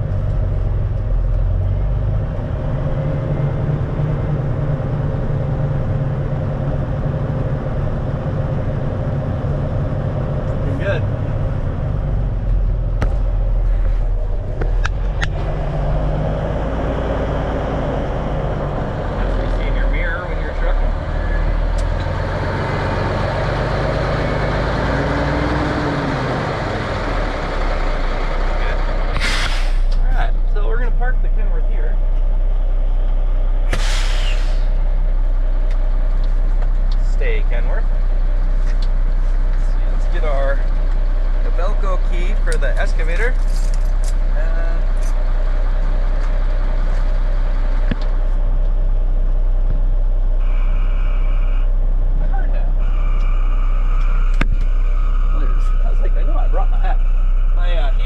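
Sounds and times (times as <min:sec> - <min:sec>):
truck diesel engine running: 0:00.0 - 0:58.0
short hiss: 0:29.2 - 0:30.0, 0:33.7 - 0:34.8.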